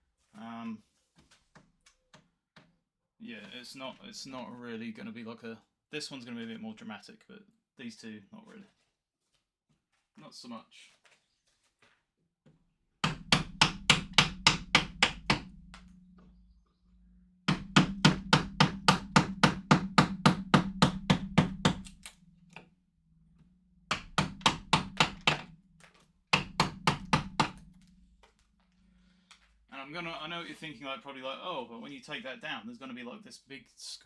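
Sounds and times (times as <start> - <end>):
mallet tapping chisel into wood: 13.0 - 16.0, 17.5 - 22.6, 23.9 - 28.4
low steady hum: 13.0 - 31.0.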